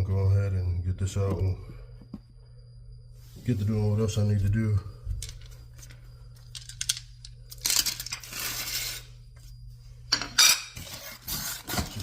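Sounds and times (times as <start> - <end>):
metal clinks and scraping: 5.2 - 9.2.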